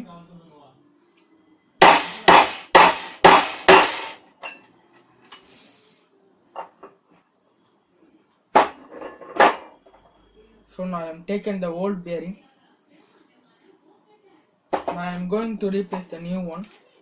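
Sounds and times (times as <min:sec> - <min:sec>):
hammer striking steel: 0:01.8 - 0:04.6.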